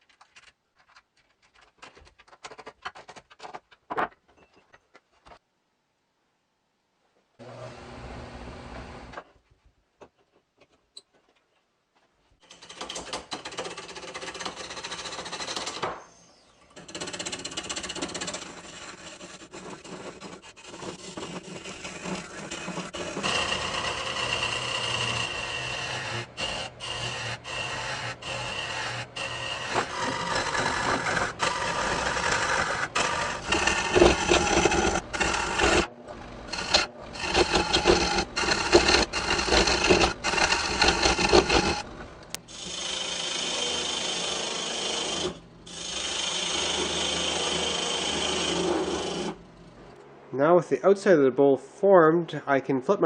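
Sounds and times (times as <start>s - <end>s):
lathe tool scraping wood: 12.4s - 50.0s
lathe motor hum: 21.0s - 49.9s.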